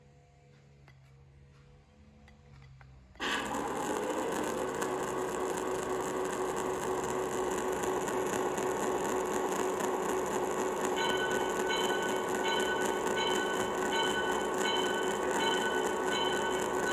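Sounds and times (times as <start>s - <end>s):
mechanical whirring with droning hum: 0.0s - 16.9s
short high tones: 7.4s - 16.9s.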